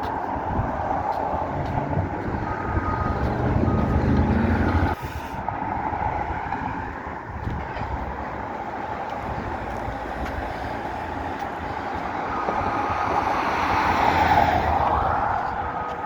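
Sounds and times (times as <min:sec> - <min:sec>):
diesel engine under load: 0:00.0 - 0:15.7
reversing alarm beeping: 0:02.2 - 0:05.0.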